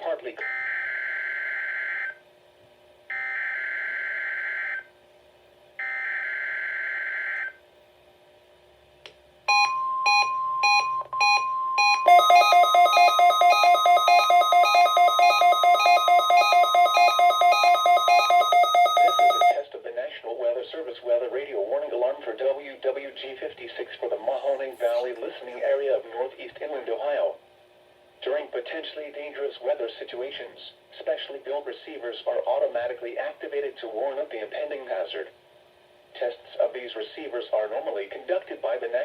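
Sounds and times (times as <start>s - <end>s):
steady warning alarm tone: 0.4s - 2.2s, 3.1s - 4.9s, 5.8s - 7.6s, 9.5s - 19.6s
rapid alarm beeping: 9.5s - 19.6s.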